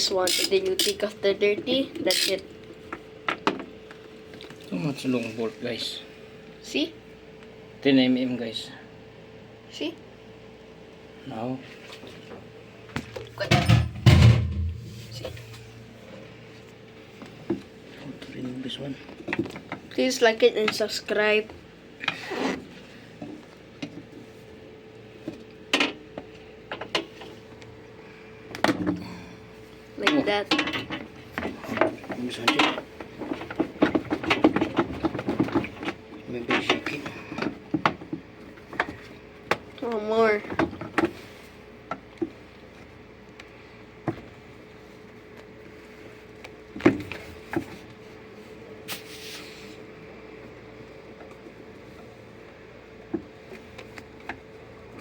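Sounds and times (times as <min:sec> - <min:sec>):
faint steady hum: 0:00.0 - 0:55.0
tools and metal parts clicking: 0:00.2 - 0:01.2, 0:02.0 - 0:02.4
short scraping hiss: 0:48.9 - 0:49.7.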